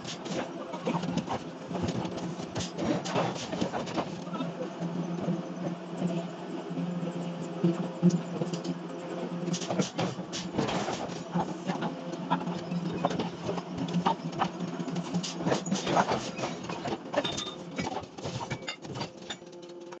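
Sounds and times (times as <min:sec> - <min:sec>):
forging machinery humming: 0:00.0 - 0:20.0
metal clanks and knocks: 0:15.0 - 0:19.6.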